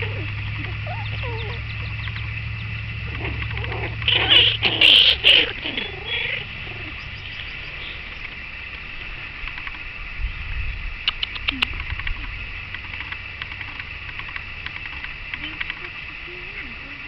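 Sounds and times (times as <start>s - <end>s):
high shrill animal calls: 0.0s - 2.3s, 3.0s - 8.3s
small animals squeaking and chirping: 0.0s - 8.4s, 11.1s - 13.6s, 14.3s - 17.0s
low hum: 0.0s - 17.0s.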